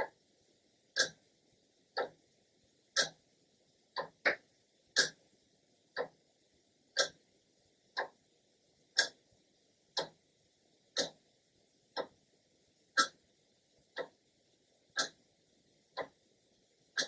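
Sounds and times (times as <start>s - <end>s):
clock ticking: 0.0s - 0.2s, 0.9s - 1.3s, 1.9s - 2.2s, 2.9s - 3.2s, 3.9s - 5.3s, 5.9s - 6.3s, 6.9s - 7.2s, 7.9s - 8.2s, 8.9s - 9.3s, 9.9s - 10.2s, 10.9s - 11.3s, 11.9s - 12.3s, 12.9s - 14.3s, 14.9s - 15.3s, 15.9s - 16.2s.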